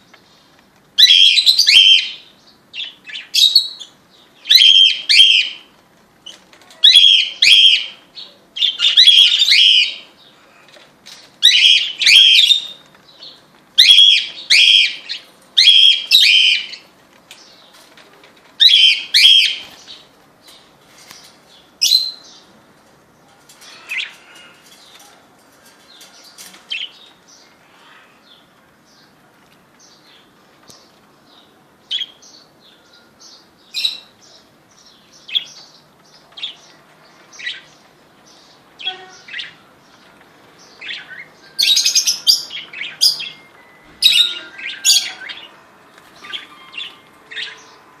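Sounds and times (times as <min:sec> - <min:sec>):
cockatiels chirping: 0:13.8 - 0:16.9.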